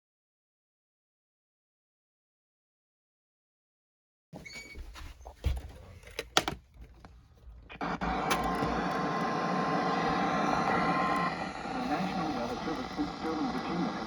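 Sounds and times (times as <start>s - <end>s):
radio clicks and thumps: 5.4s - 14.0s
radio static: 7.6s - 14.0s.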